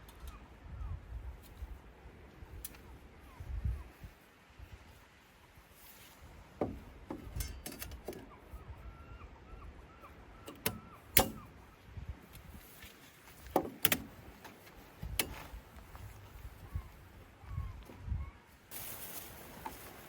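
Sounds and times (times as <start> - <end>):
sharp clicks and knocks: 13.4 - 15.4.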